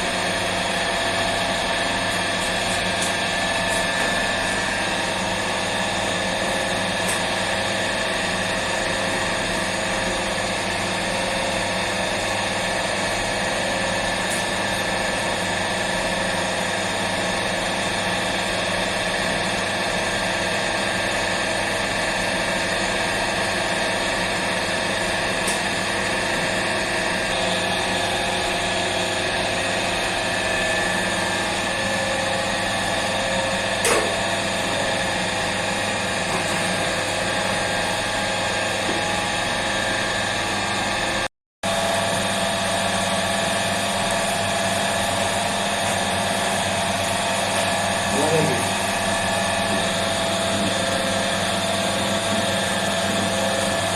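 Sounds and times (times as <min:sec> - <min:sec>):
machine hum: 0:00.0 - 0:16.9, 0:22.6 - 0:53.9.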